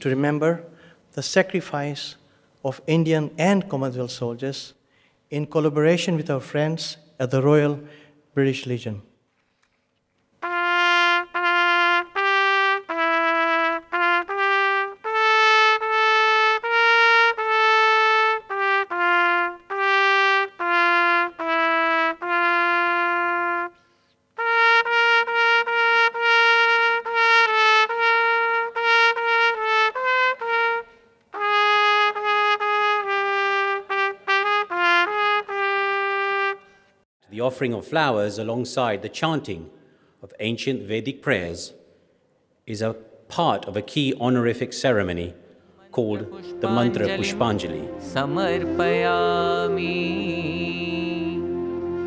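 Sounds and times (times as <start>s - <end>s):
solo brass instrument call: 10.4s - 36.8s, 45.8s - 52.0s.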